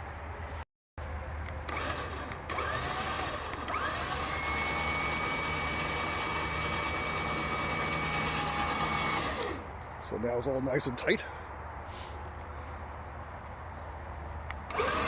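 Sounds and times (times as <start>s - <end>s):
electric winch motor whining: 1.7s - 9.7s, 14.7s - 15.0s.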